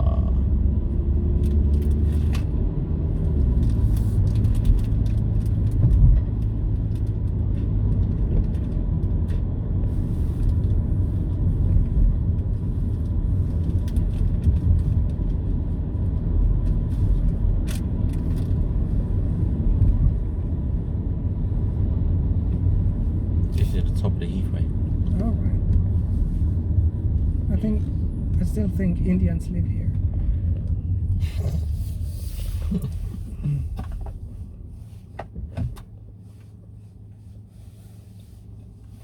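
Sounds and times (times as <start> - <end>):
car cabin road rumble: 0.0 - 39.0.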